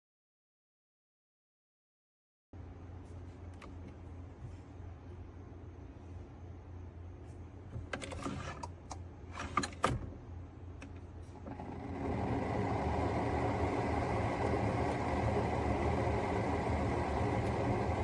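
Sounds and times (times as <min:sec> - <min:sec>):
thin steady whine: 0:10.4 - 0:18.0
coffee maker motor hum: 0:11.3 - 0:18.0.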